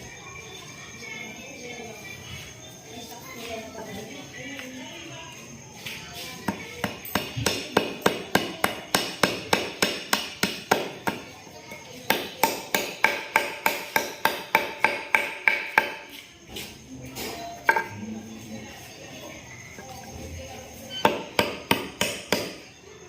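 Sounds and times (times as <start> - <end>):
steady hammering with metallic ring: 6.5 - 11.3, 12.0 - 16.0, 21.0 - 22.7.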